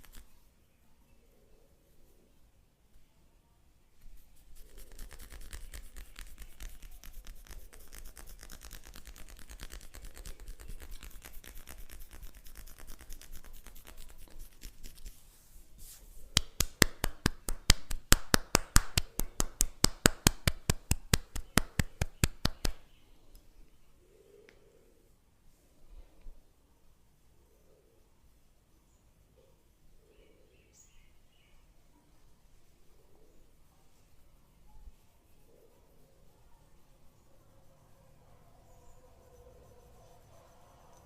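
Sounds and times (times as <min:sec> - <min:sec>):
hands scratching and rubbing hair: 0:00.0 - 0:00.5, 0:04.0 - 0:22.8, 0:32.5 - 0:37.0
hands slapping head rhythmically: 0:16.3 - 0:22.8.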